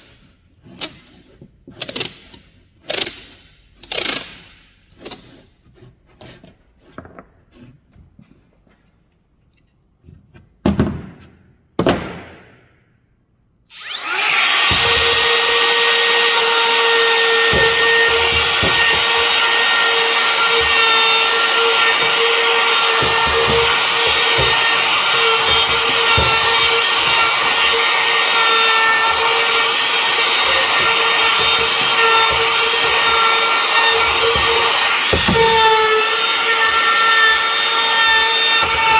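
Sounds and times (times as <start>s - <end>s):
power tool cutting wood: 13.7s - 38.9s
knocks: 16.9s - 36.0s.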